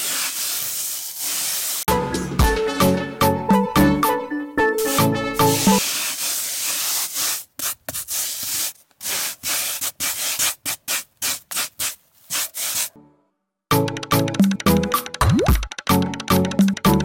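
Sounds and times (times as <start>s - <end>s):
hand rubbing or sanding strokes: 0.0s - 1.9s, 4.8s - 12.9s.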